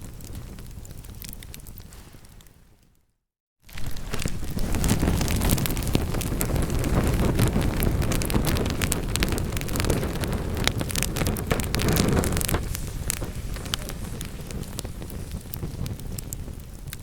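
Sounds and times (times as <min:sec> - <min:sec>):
fire crackling and popping: 0:00.0 - 0:03.0, 0:03.6 - 0:17.0
low rush of flames: 0:03.7 - 0:17.0.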